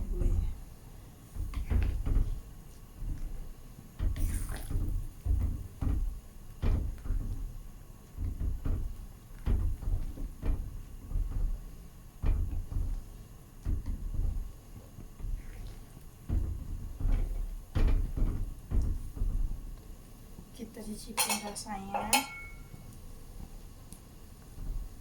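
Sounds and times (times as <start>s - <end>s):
pot knocking and splashing: 21.2s - 22.8s.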